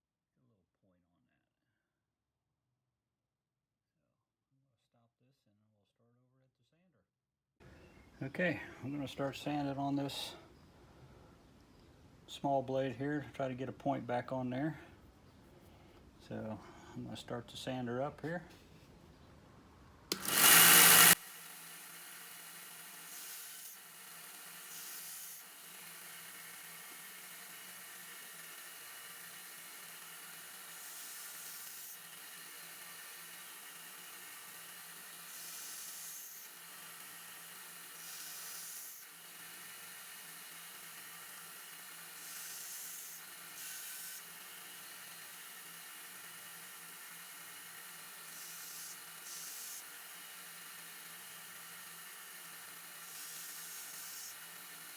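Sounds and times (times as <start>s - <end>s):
knife blade grinding on belt: 20.1s - 21.2s
belt sander running: 20.1s - 54.9s.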